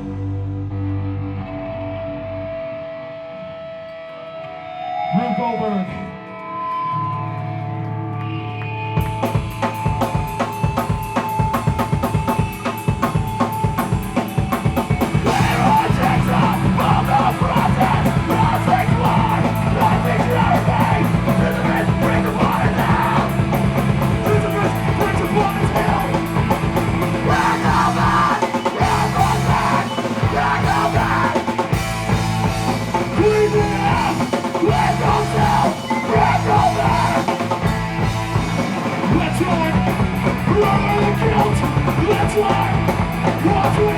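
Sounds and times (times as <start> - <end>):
live rock band playing: 6.1 - 43.9
drum kit pounding: 9.0 - 43.9.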